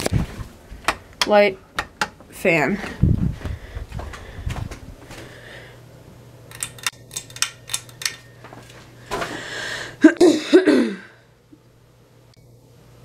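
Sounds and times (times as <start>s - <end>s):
steady low hum: 0.0s - 13.0s
person coughing: 10.0s - 11.2s.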